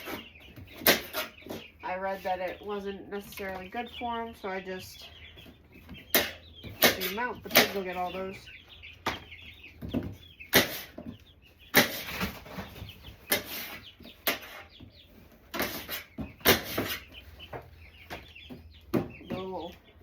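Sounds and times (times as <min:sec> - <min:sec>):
chickens clucking: 0:00.0 - 0:20.0.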